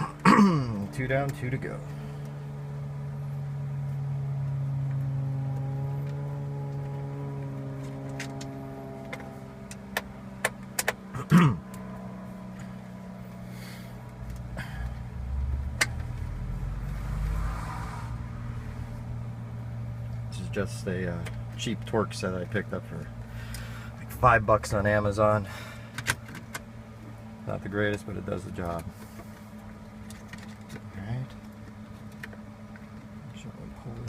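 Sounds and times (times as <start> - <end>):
low steady hum: 0.0 - 34.0
low rumble: 11.7 - 21.6.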